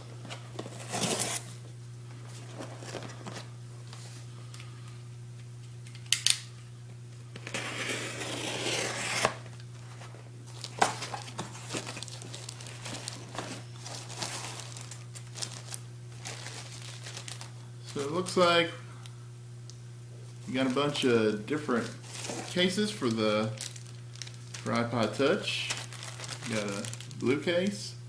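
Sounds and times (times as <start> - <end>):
packing tape tearing: 0.5 - 1.6, 7.4 - 9.6, 10.5 - 18.2, 21.8 - 27.3
cardboard flaps rustling: 9.2 - 18.2.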